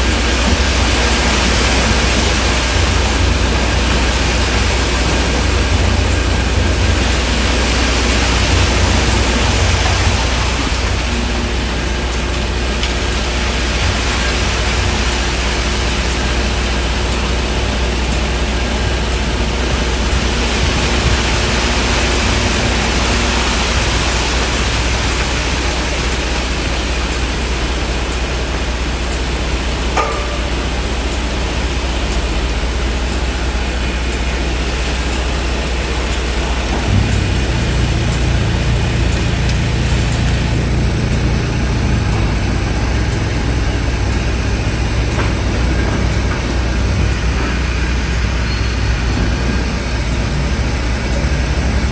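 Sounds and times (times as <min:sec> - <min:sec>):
low engine drone: 0:00.0 - 0:51.9
street and building-site noise: 0:00.0 - 0:51.9
brief clink: 0:30.0 - 0:30.9.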